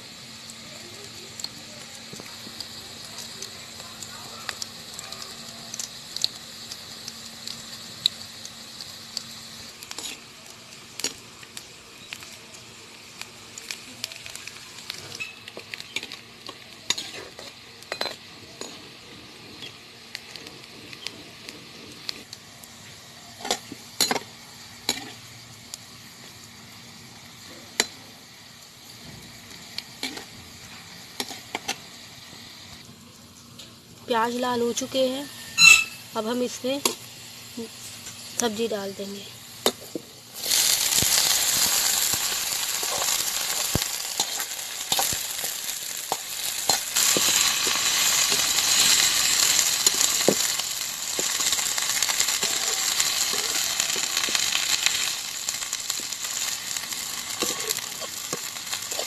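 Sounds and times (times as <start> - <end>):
onion sizzling in oil: 0.0 - 59.0.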